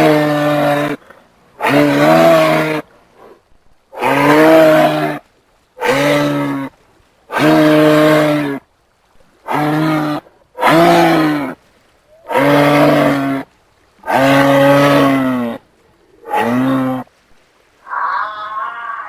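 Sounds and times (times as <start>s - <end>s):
giraffe low moo-like calls: 17.8s - 19.0s.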